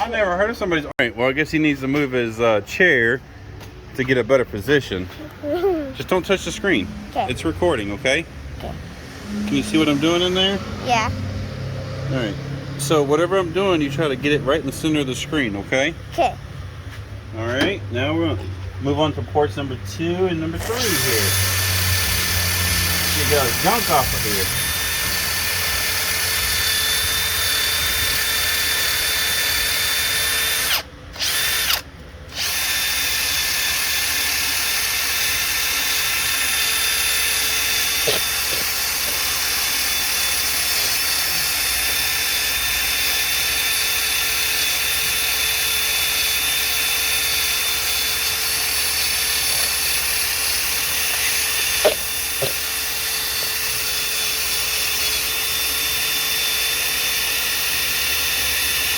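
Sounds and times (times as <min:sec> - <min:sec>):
power drill scrubbing metal: 0:09.3 - 0:10.6, 0:19.9 - 0:58.9.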